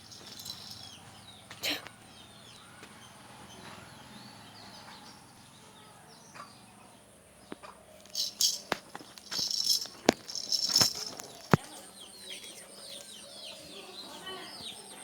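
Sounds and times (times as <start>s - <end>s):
rustling flapping bursts: 0.0s - 0.9s, 8.1s - 11.6s.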